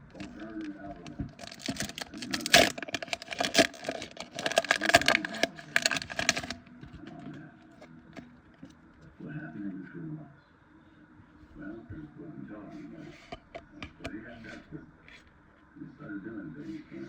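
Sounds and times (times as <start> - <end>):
foil wrapper crinkling and tearing: 0.1 - 7.3.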